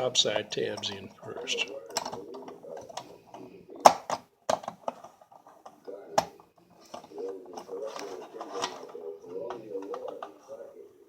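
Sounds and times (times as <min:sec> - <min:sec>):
plastic knock: 0:03.8 - 0:05.2.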